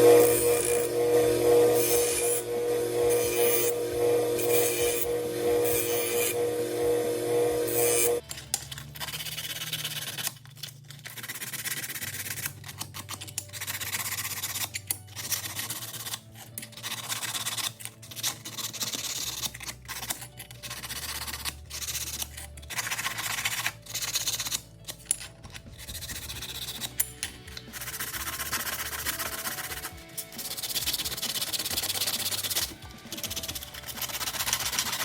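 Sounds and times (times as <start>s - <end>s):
file rasping on metal plate: 0.0s - 8.2s, 25.6s - 35.0s.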